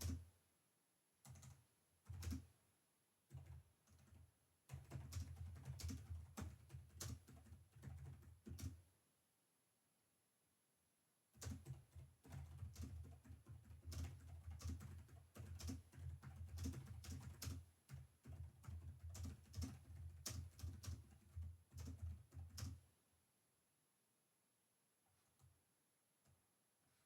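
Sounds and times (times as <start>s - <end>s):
computer keyboard typing: 0.0s - 0.3s, 1.2s - 2.5s, 3.3s - 8.8s, 11.4s - 22.8s.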